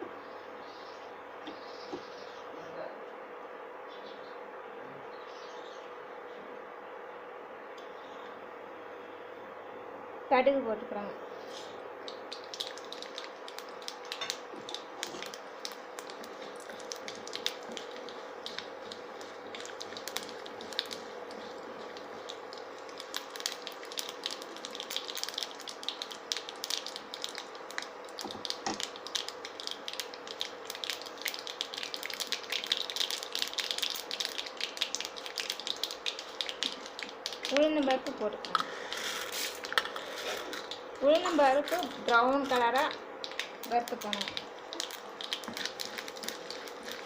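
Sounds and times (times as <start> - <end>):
mustard seeds popping in hot oil: 12.0 - 47.0.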